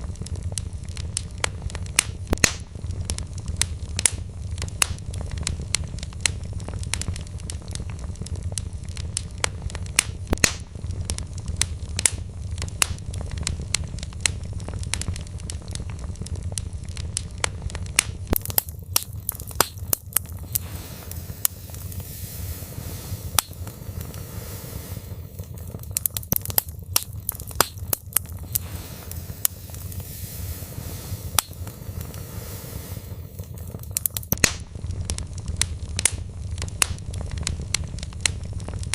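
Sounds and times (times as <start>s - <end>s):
logs crackling and popping: 0.0s - 38.9s
low rumble of flame: 0.0s - 38.9s.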